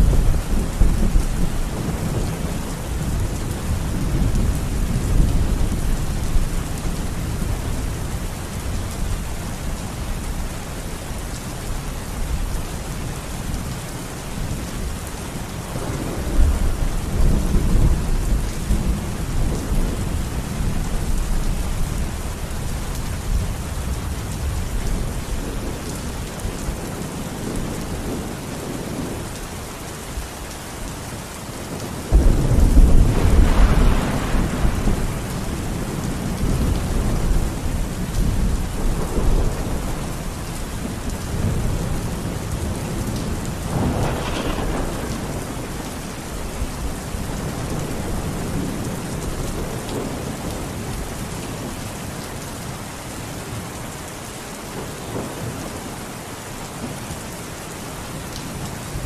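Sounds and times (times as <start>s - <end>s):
steady rain falling: 0.0s - 59.0s
thunder rumble: 32.1s - 40.3s, 41.3s - 50.7s.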